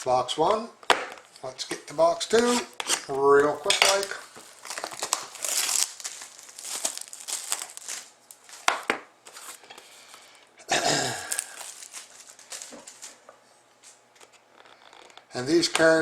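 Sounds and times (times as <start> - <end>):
packaging tearing: 2.2 - 8.7, 11.1 - 12.7
plastic wrapping crinkling: 2.2 - 10.3, 11.0 - 13.2
handling rustles: 2.3 - 10.2, 11.2 - 14.0.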